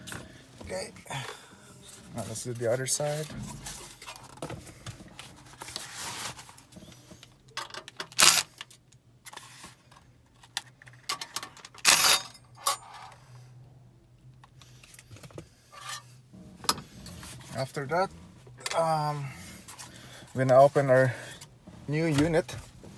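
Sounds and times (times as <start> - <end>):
metal clatters: 3.0 - 5.3.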